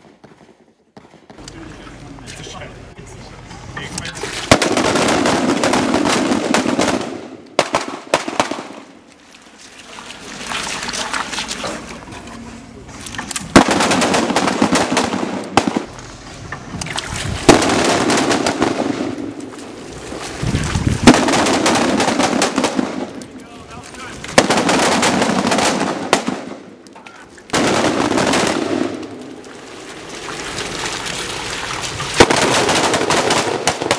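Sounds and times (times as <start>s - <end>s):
rifles firing rapid shots: 4.5s - 8.9s, 13.5s - 15.9s, 17.5s - 19.4s, 21.0s - 23.2s, 24.4s - 26.7s, 27.5s - 29.1s, 32.2s - 33.9s.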